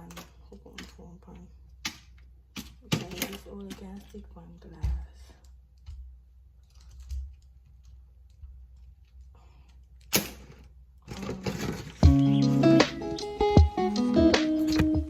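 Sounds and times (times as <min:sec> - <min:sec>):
music: 0:12.0 - 0:15.0.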